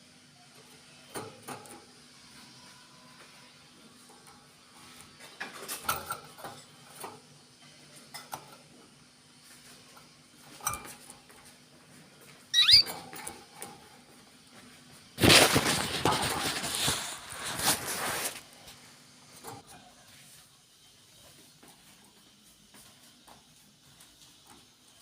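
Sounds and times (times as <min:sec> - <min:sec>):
short high chirp: 0:12.6 - 0:12.9
loud rustling: 0:15.2 - 0:18.5
small birds scratching and clicking: 0:15.2 - 0:18.5.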